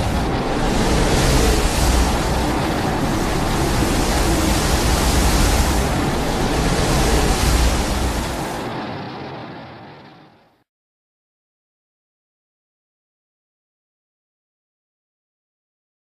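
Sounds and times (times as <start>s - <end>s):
deep rumble: 0.0s - 10.1s
loud rushing noise: 0.0s - 10.2s.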